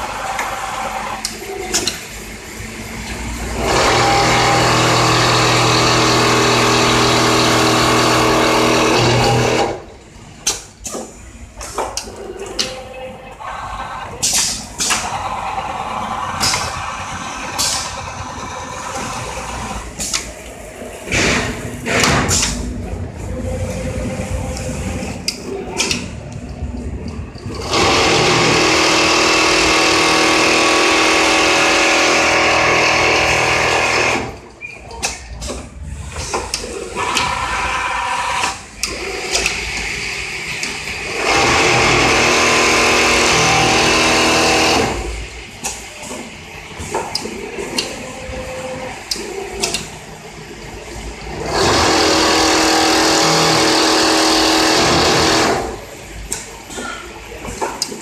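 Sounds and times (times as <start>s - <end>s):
sewing machine running loudly: 2.2s - 9.9s, 27.6s - 34.4s, 36.9s - 45.2s, 51.3s - 55.9s.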